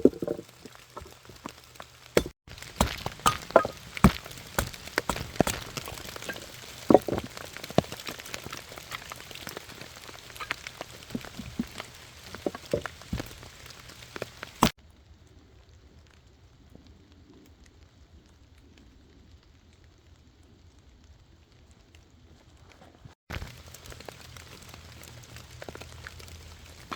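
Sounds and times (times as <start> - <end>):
campfire crackling and popping: 0.0 - 14.8, 23.3 - 26.9.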